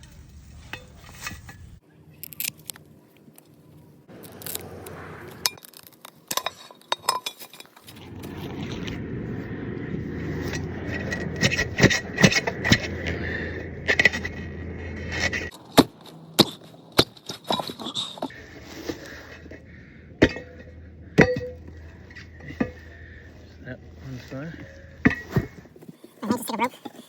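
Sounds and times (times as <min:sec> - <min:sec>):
metal hardware clinking: 0:05.4 - 0:07.9
steady rushing noise: 0:07.8 - 0:17.3.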